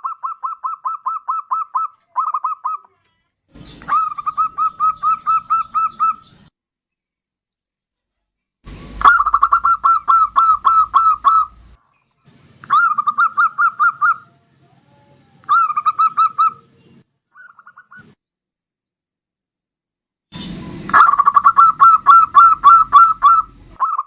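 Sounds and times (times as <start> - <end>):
dove cooing: 3.6 - 6.5, 9.0 - 11.7, 12.6 - 16.7, 20.9 - 24.0.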